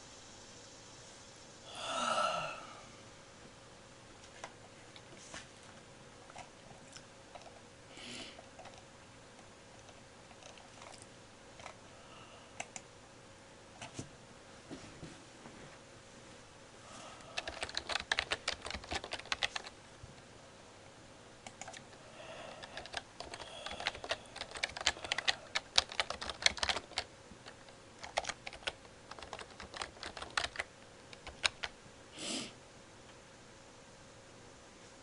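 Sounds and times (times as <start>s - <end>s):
computer keyboard typing: 17.3s - 19.8s, 21.4s - 21.8s, 22.5s - 31.7s.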